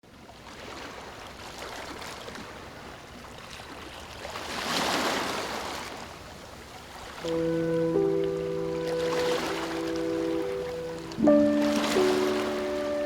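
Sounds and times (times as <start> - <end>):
ocean surf washing ashore: 6.9 - 13.0
wave breaking: 7.2 - 13.0.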